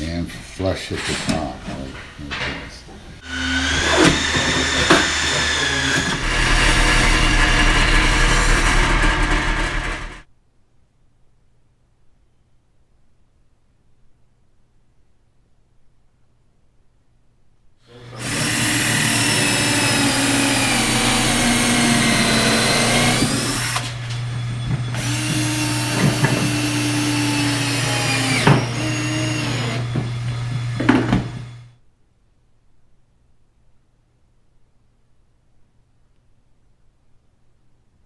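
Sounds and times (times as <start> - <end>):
electric planer whining: 3.2 - 10.2, 17.9 - 31.7.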